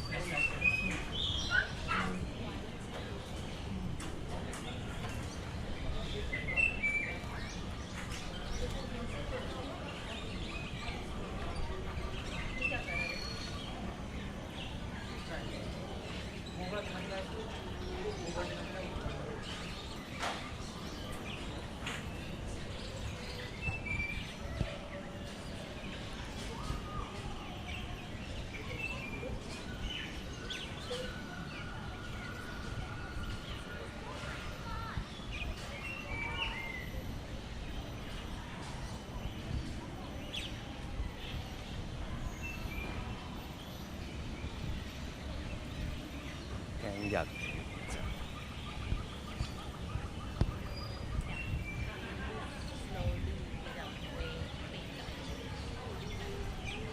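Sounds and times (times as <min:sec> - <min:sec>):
birds chirping and calling: 0:00.0 - 0:03.7, 0:04.5 - 0:56.9
low background noise: 0:00.0 - 0:56.9
birds chirping and whistling: 0:45.7 - 0:52.0.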